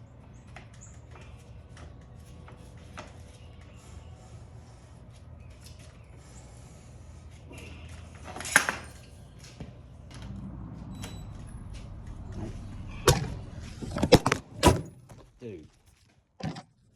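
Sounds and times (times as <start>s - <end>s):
loud metallic clank: 10.2s - 15.3s.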